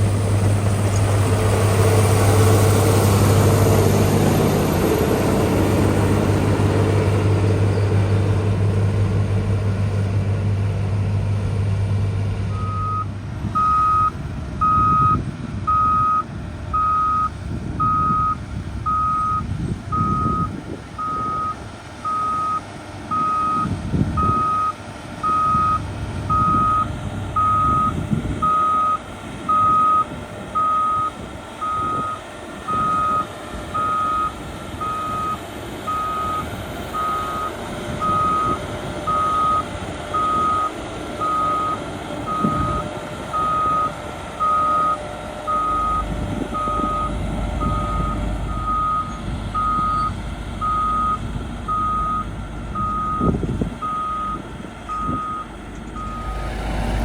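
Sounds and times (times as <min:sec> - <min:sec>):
diesel engine rumble: 0:00.0 - 0:57.0
backup alarm beeping: 0:43.4 - 0:56.5.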